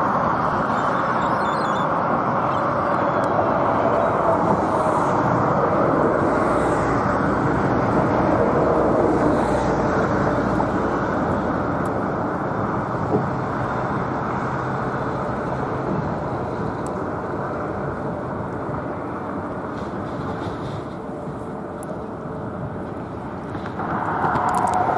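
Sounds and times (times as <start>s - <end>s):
jet engine rushing noise: 22.7s - 24.9s.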